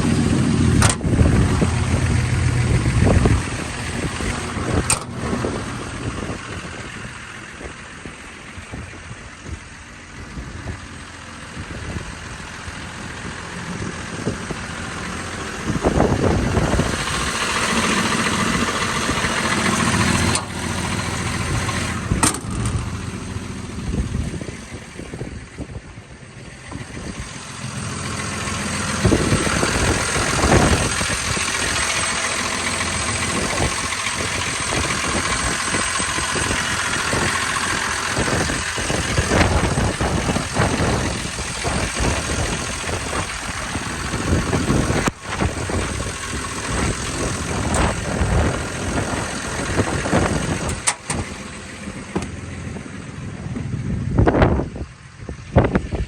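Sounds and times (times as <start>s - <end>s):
excavator diesel engine running: 0.0s - 56.0s
knocks and clunks: 46.6s - 52.8s.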